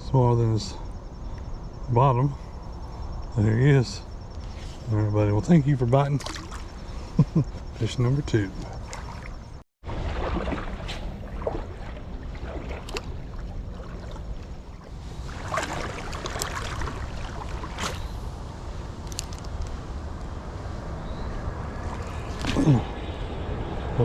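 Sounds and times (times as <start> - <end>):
small water splashes: 6.1 - 6.8, 8.6 - 18.2, 21.8 - 22.9
creek water rushing: 9.9 - 18.4.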